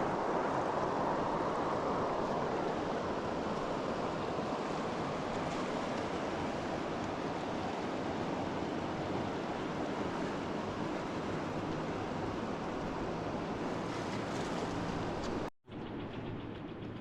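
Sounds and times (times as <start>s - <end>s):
river water rushing: 0.0s - 15.5s.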